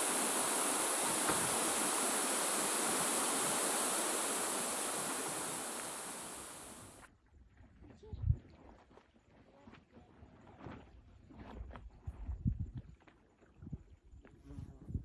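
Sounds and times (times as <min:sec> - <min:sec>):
falling water rushing: 0:00.0 - 0:06.9.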